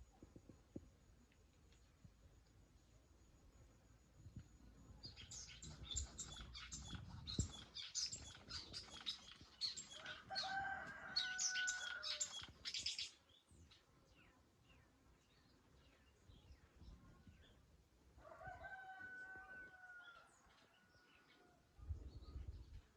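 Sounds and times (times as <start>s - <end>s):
birds chirping: 5.0s - 13.9s
long steady bird call: 5.0s - 16.7s.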